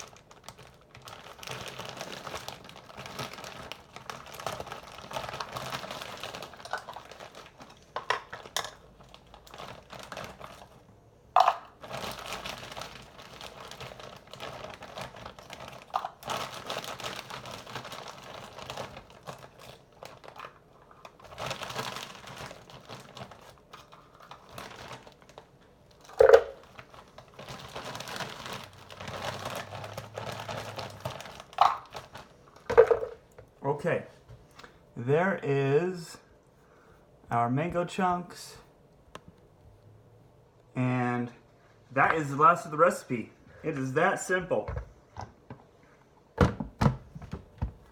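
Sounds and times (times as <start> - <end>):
plastic bag crinkling: 0.0 - 33.4.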